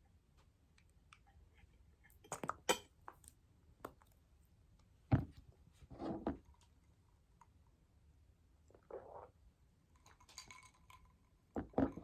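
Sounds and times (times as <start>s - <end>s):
tableware clinking: 2.7s - 2.9s.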